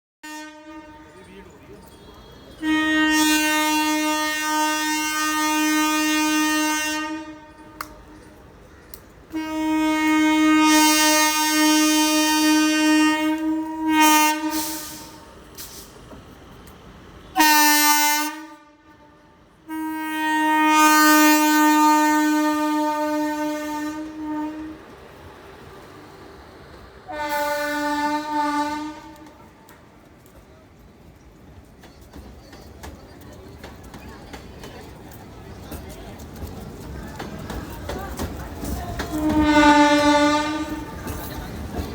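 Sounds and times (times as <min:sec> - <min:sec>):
locomotive air horn blasts: 0:00.2 - 0:07.8, 0:09.3 - 0:15.3, 0:17.3 - 0:24.8, 0:27.1 - 0:29.4, 0:39.1 - 0:41.2.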